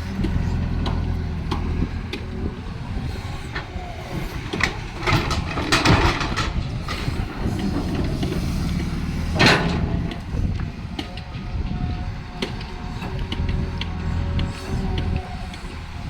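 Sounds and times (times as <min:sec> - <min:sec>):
excavator diesel engine running: 0:00.0 - 0:16.0
metal clanks and knocks: 0:03.5 - 0:11.2.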